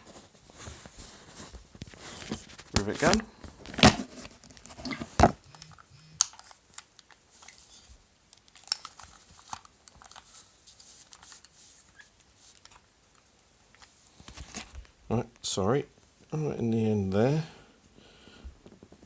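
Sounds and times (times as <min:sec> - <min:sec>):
faint rustling: 0:00.0 - 0:06.5.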